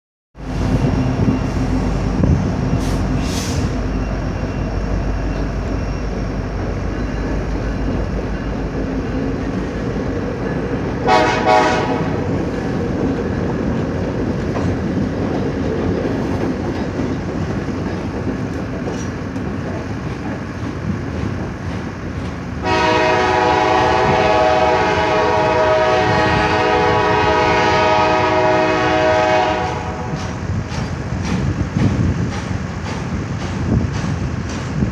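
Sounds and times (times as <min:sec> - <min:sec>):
train wheels rumbling on rail: 0:00.4 - 0:34.9
train horn blast: 0:11.0 - 0:12.4, 0:22.6 - 0:30.4.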